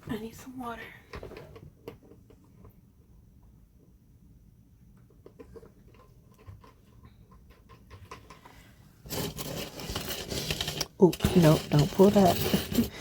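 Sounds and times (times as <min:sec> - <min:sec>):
jewelry clicking and scratching: 0:09.0 - 0:13.0
jewelry rustling clatter: 0:09.0 - 0:13.0.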